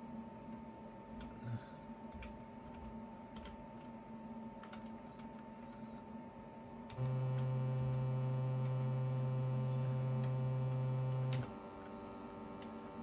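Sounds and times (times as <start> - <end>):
click: 6.9 - 8.9, 10.2 - 12.8
sawtooth synth bass note: 7.0 - 11.4.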